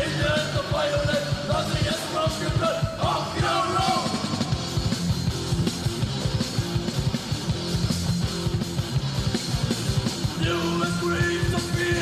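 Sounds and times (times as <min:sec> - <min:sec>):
bass guitar: 0:00.0 - 0:12.0
electric guitar: 0:00.0 - 0:12.0.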